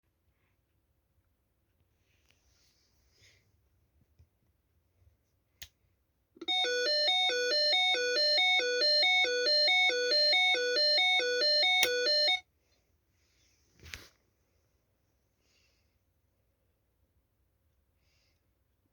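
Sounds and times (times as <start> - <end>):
electronic two-tone alarm signal: 6.4 - 12.4.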